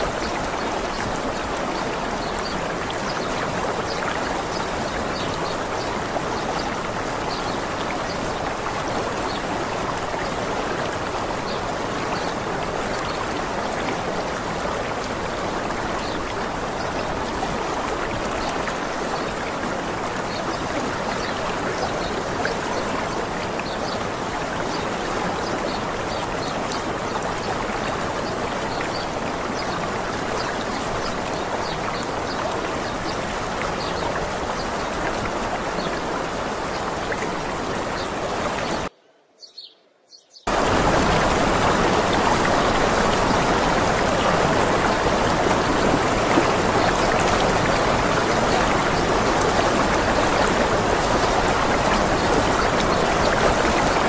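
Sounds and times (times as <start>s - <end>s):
water rushing in stream: 0.0s - 38.9s, 40.5s - 54.0s
faint bird chirps: 39.0s - 40.4s.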